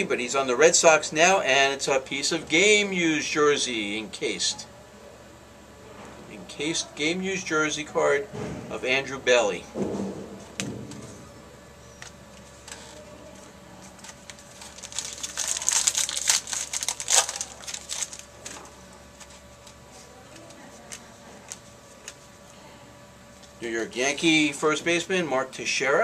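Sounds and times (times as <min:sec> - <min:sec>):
foil wrapper crinkling: 0:13.8 - 0:22.2.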